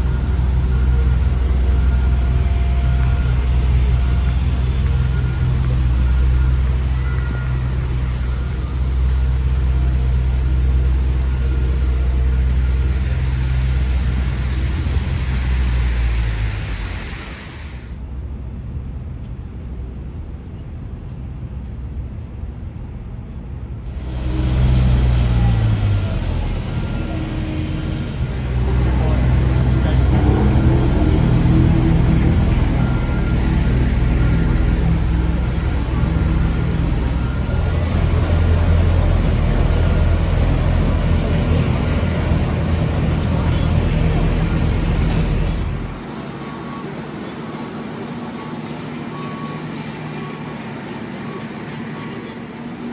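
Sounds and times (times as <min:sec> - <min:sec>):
low engine rumble: 0:00.0 - 0:46.8
traffic noise: 0:00.0 - 0:52.9
vehicle passing close: 0:23.9 - 0:46.0.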